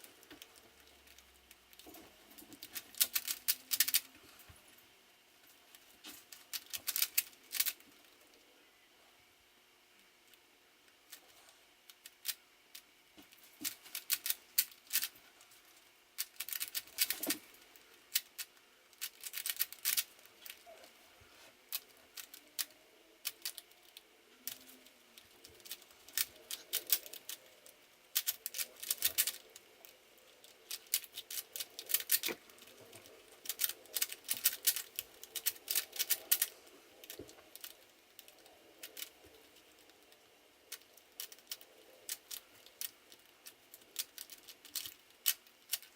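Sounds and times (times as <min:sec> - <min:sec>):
puzzle cube clicking: 0:06.5 - 0:07.8, 0:13.6 - 0:15.1, 0:18.1 - 0:20.7, 0:25.5 - 0:39.2, 0:44.0 - 0:45.9.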